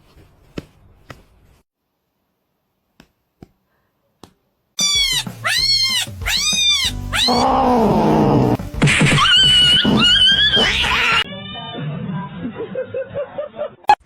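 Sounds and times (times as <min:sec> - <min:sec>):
cat meowing and yowling: 0:04.8 - 0:08.2.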